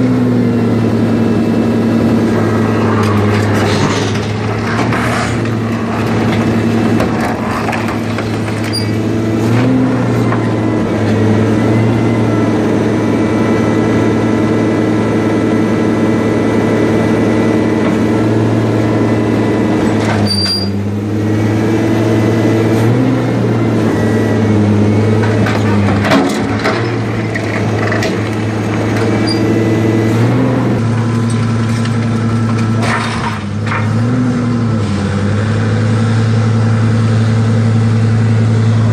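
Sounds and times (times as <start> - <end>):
hydraulic power unit humming: 0.0 - 34.1
metal knocks and clanks: 2.7 - 10.5, 25.2 - 29.5.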